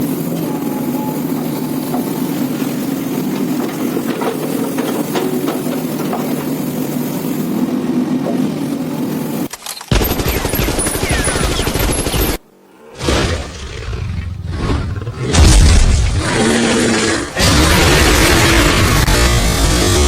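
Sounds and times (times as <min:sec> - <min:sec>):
excavator diesel engine running: 0:00.0 - 0:09.5, 0:16.4 - 0:20.0
metal knocks and clanks: 0:03.3 - 0:06.6.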